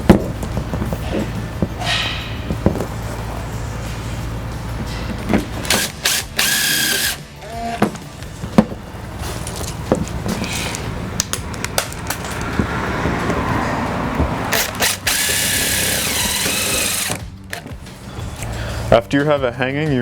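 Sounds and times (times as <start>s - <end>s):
cordless drill driving screws: 5.6s - 7.2s, 14.5s - 17.2s.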